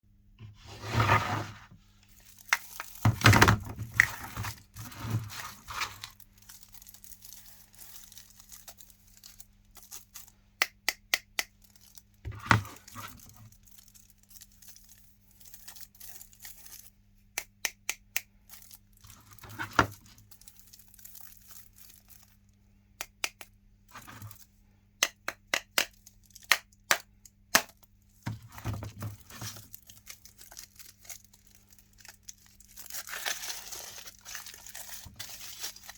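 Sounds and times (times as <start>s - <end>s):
foil wrappers crinkling and tearing: 2.0s - 10.4s, 11.5s - 12.2s, 12.8s - 17.0s, 18.4s - 22.6s, 27.6s - 35.9s.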